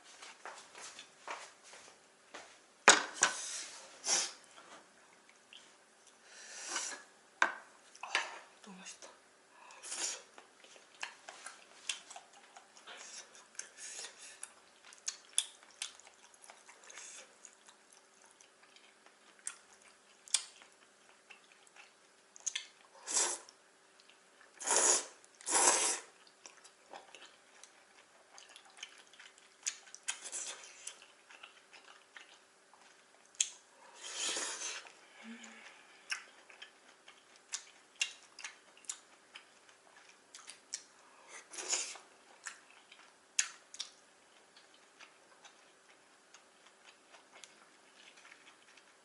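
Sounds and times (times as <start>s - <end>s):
wet chewing with mouth clicks: 9.6s - 49.0s
slurping noodles: 24.6s - 26.1s.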